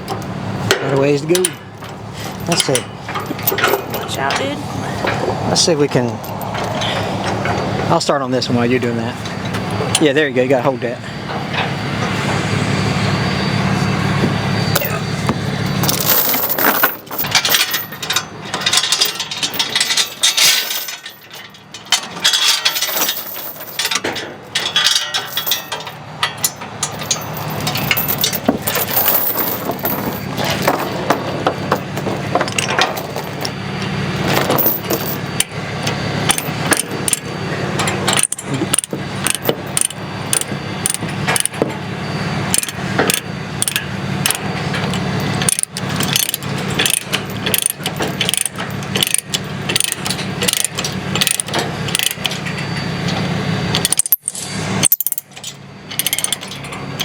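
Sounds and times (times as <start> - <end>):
metallic clicking of tie-downs: 15.8 - 33.6, 42.6 - 52.6.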